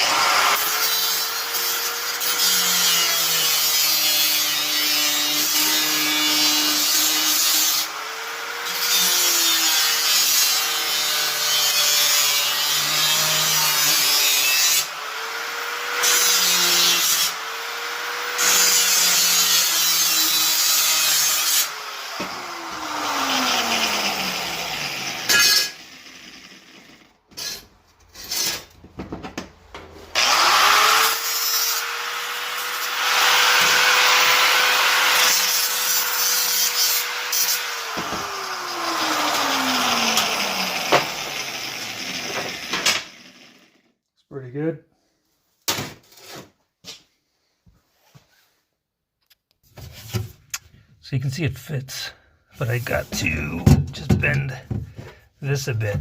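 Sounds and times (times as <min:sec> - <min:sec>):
power tool cutting sheet steel: 0:00.0 - 0:28.7, 0:30.1 - 0:43.8.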